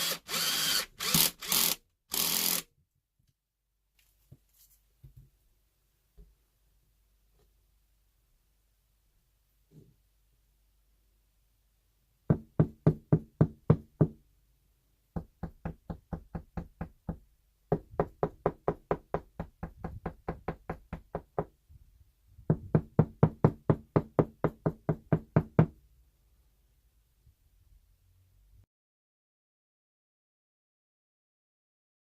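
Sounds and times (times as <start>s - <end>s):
knocking on wall by hand: 12.3s - 14.2s, 15.2s - 21.6s, 22.5s - 25.8s.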